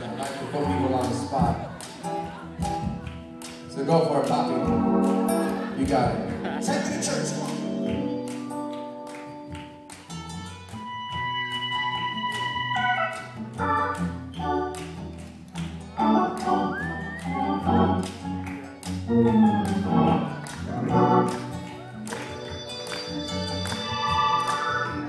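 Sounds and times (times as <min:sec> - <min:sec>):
organ-like keyboard: 0:00.0 - 0:09.6, 0:12.8 - 0:25.0
bass: 0:00.0 - 0:25.0
steady beat: 0:04.6 - 0:08.2.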